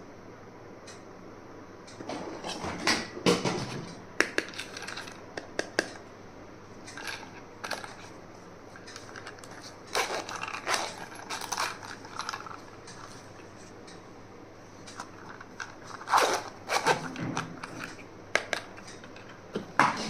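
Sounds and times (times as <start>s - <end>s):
packaging rustling: 4.4s - 5.2s, 7.0s - 8.2s, 8.8s - 13.7s, 14.9s - 18.0s.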